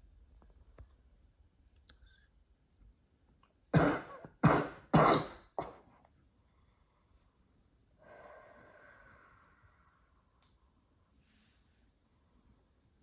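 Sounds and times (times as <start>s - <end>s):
woman coughing hard: 3.7s - 5.8s
long breathy exhale: 8.0s - 10.3s.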